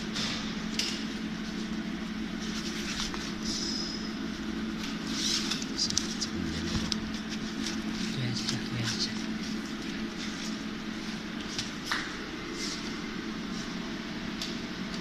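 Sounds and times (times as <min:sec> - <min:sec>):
welding machine electrical hum: 0:00.0 - 0:15.0.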